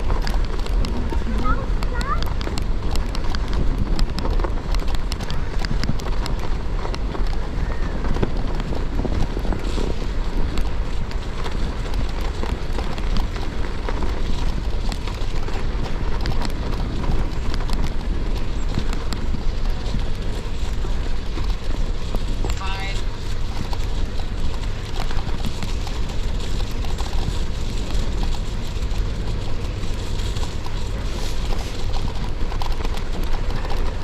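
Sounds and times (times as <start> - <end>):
bike tyres crunching on ice: 0.0 - 34.0
wind rumble on microphone: 0.0 - 34.0.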